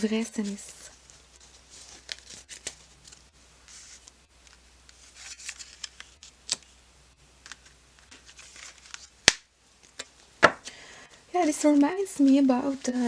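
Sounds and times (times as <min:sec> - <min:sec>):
cards tapping and clicking: 0:07.4 - 0:10.8.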